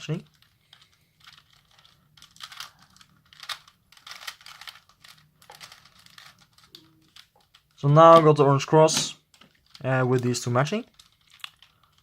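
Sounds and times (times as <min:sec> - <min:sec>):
puzzle cube clicking: 0:02.2 - 0:08.3.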